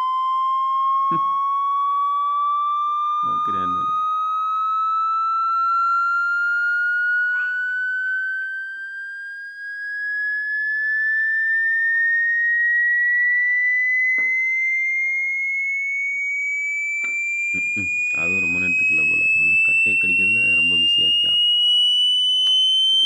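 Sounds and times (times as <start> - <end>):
rising electronic test tone: 0.0 - 23.0.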